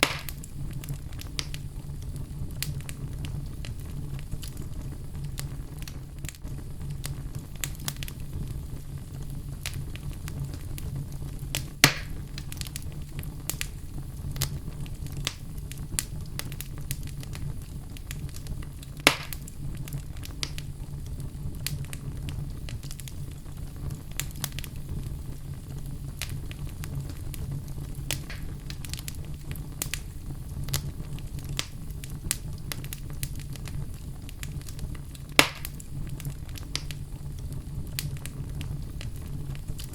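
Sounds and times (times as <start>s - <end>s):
fire crackling and popping: 0.0s - 39.9s
low rumble of flame: 0.0s - 39.9s.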